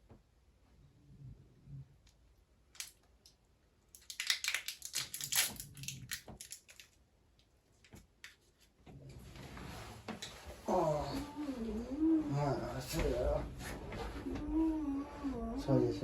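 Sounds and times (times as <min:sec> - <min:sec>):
crackling handling noise: 0:02.7 - 0:08.8.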